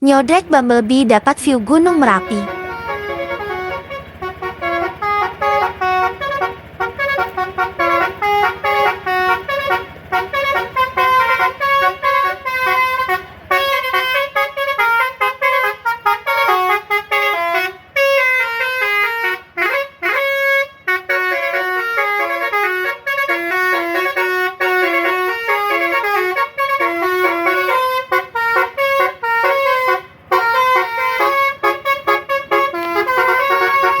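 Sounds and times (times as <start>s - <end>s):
multi-tone bus horn melody: 1.9s - 34.0s.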